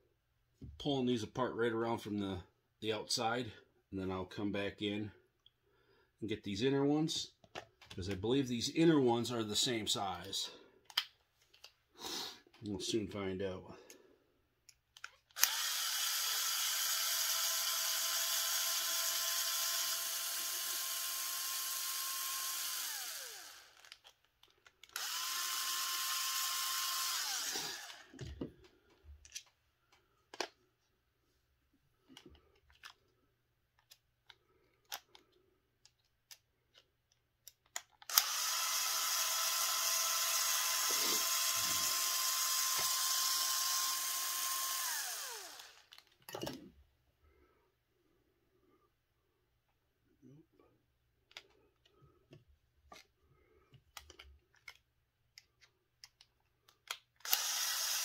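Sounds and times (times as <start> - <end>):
clicks of small parts handled: 7.4 - 8.2, 10.2 - 11.8, 14.6 - 15.5, 28.1 - 30.6, 32.0 - 38.2, 45.8 - 46.6, 51.2 - 53.1, 53.7 - 57.4
cordless power driver whirring: 15.3 - 24.2, 24.8 - 28.4, 38.0 - 46.0, 57.2 - 58.0.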